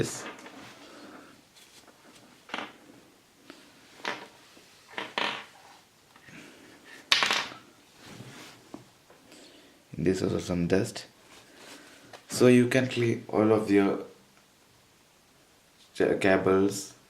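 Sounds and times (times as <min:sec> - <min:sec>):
tissue rustling against cable: 0:00.5 - 0:02.4.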